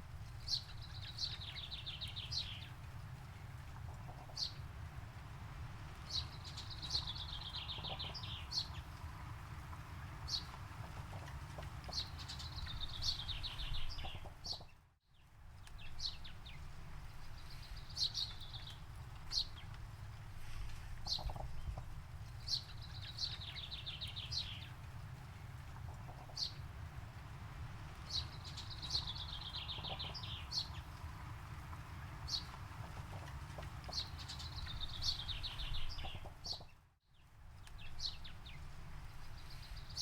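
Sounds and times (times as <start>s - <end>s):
songbird trilling: 28.1s - 30.8s.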